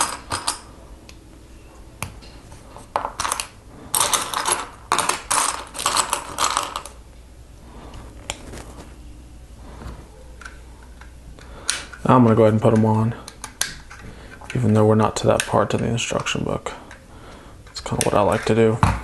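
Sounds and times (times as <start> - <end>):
plastic toy bricks clattering: 3.0 - 7.0.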